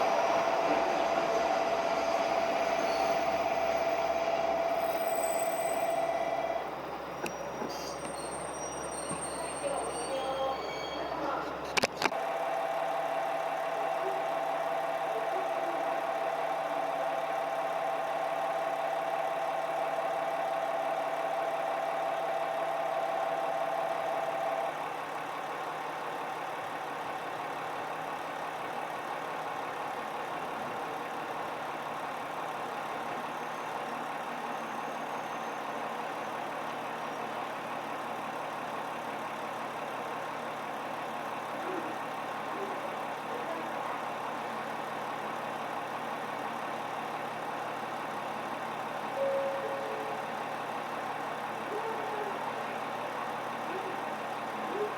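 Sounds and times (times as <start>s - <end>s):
steady high tone: 0.0s - 11.3s
train machinery humming: 0.0s - 54.9s.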